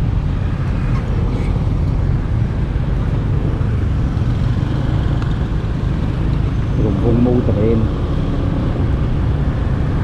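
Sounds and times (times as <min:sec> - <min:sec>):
vehicle road rumble: 0:00.0 - 0:10.0.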